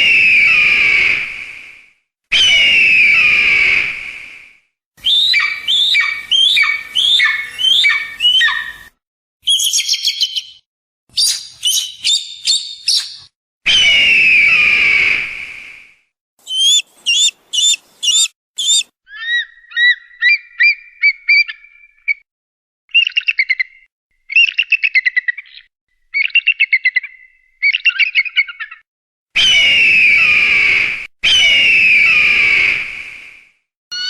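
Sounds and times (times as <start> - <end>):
raptor descending screams: 2.3 - 4.0
raptor chattering calls: 16.4 - 18.8
raptor whistled notes: 16.4 - 18.8.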